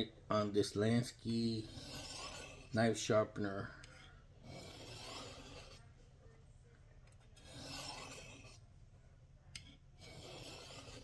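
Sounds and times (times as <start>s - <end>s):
blade scraping on sharpener: 1.0s - 3.1s, 3.9s - 5.9s, 7.3s - 8.6s, 9.6s - 11.0s.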